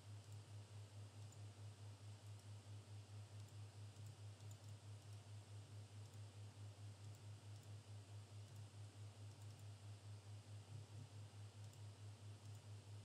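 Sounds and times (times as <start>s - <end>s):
faint clicks: 3.4s - 5.2s, 8.4s - 9.7s, 11.6s - 13.0s.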